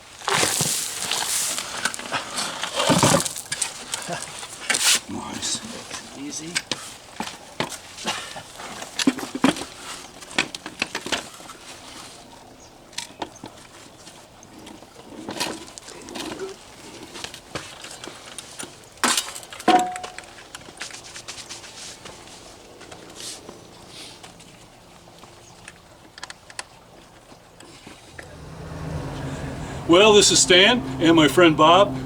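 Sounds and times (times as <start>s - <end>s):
rock and dirt being dumped: 0.0s - 5.0s
metal clank: 19.7s - 20.3s.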